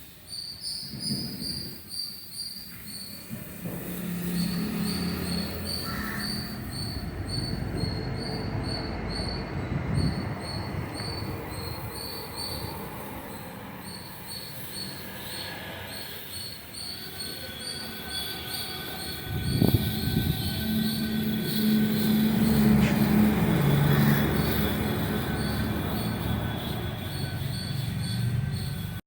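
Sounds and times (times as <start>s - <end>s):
high-pressure water jet hissing: 2.8s - 6.8s
rhythmic high-pitched chirping: 4.3s - 29.0s
engine running low: 19.2s - 29.0s.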